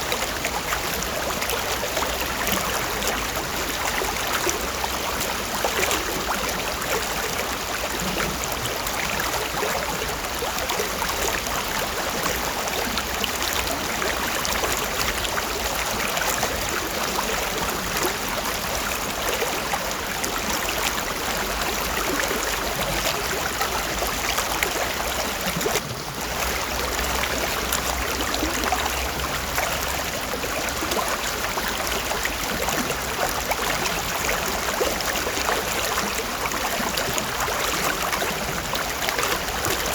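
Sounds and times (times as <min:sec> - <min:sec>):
stream water babbling: 0:00.0 - 0:39.9.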